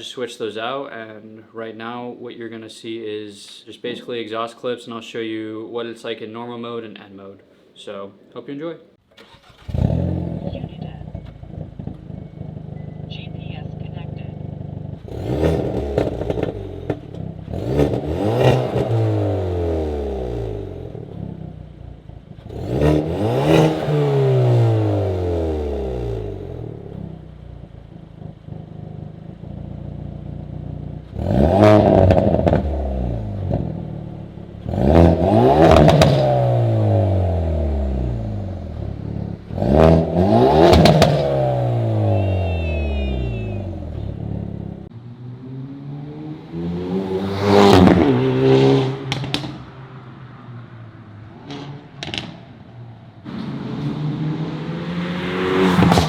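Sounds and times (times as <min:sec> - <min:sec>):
car engine revving hard: 0:09.4 - 0:12.8, 0:14.0 - 0:21.7, 0:22.3 - 0:27.0, 0:31.0 - 0:49.6, 0:53.3 - 0:56.0.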